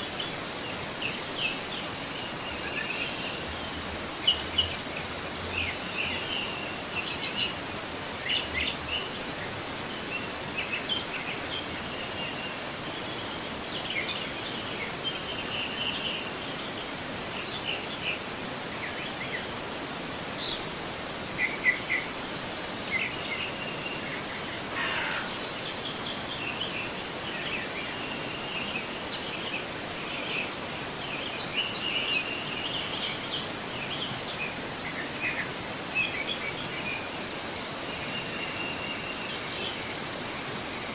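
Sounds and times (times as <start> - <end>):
small birds chirping: 21.3 - 40.9.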